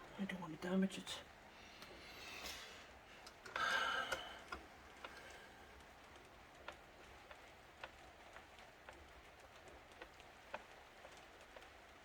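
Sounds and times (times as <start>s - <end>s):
faint clicks of small parts: 1.8s - 12.0s.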